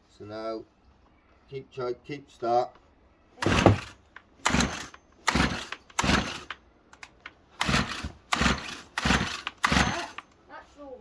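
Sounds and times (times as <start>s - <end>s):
recoil starter pull whirr: 3.4s - 10.3s.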